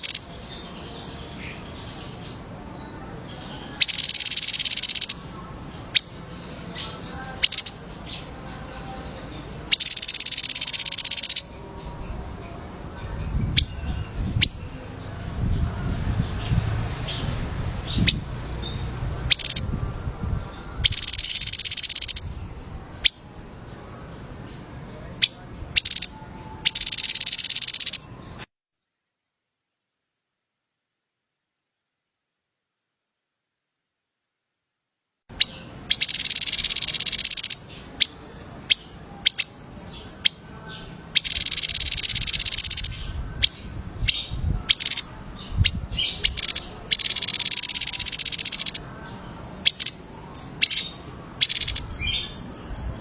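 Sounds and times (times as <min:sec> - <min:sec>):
songbird rattling trills: 0:00.0 - 0:01.7, 0:03.7 - 0:08.3, 0:09.0 - 0:11.6, 0:13.3 - 0:20.0, 0:20.8 - 0:23.2, 0:24.2 - 0:28.1, 0:35.3 - 0:53.0
sharp high bird chirps: 0:00.0 - 0:08.3, 0:09.0 - 0:11.6, 0:13.3 - 0:28.5, 0:35.3 - 0:53.0.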